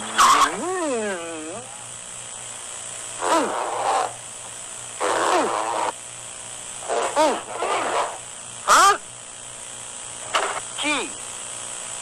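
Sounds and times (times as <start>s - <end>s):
cartoon voice sounding out letters: 3.2s - 4.1s, 5.0s - 5.8s, 6.9s - 7.5s.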